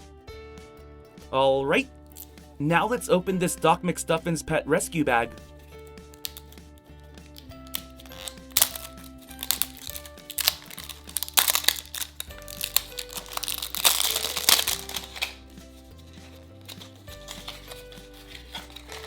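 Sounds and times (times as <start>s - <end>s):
light background music: 0.0s - 19.0s
plastic packaging crinkling: 7.3s - 19.0s.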